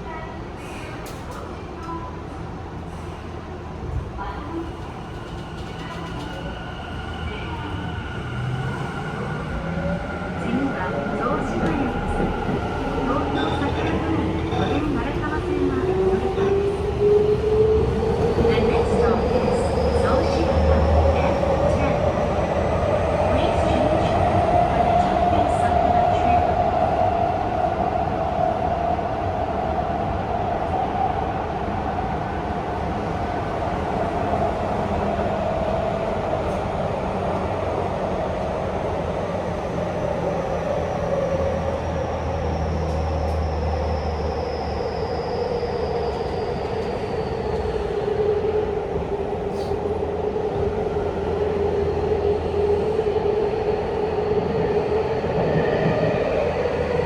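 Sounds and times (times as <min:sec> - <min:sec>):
train wheels rumbling on rails: 0:02.8 - 0:28.2.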